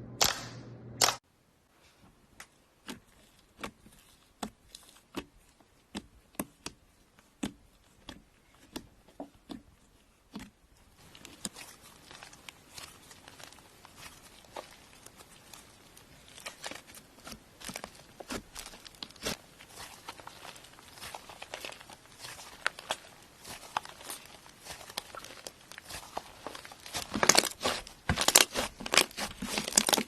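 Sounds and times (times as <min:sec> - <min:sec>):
faint slime crackle: 0:02.3 - 0:30.0.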